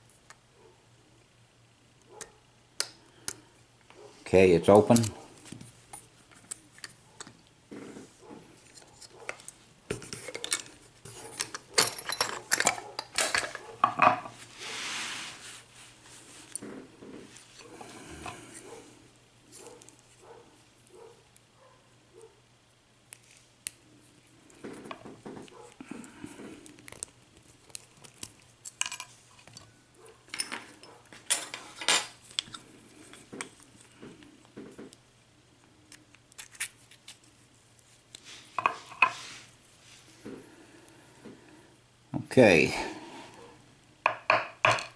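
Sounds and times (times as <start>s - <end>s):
small metal parts clinking: 11.4s - 14.2s, 28.6s - 29.6s, 30.3s - 32.6s
soft rubbing hiss: 14.2s - 21.2s, 36.7s - 41.7s.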